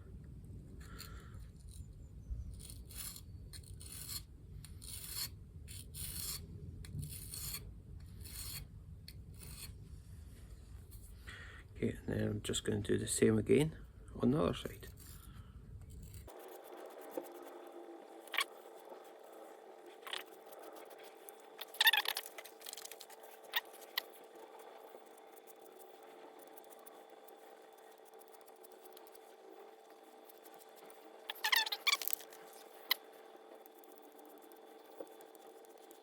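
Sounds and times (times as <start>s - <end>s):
faint steady hum: 0.0s - 36.0s
sharpening stick scraping chisel edge: 16.1s - 33.1s.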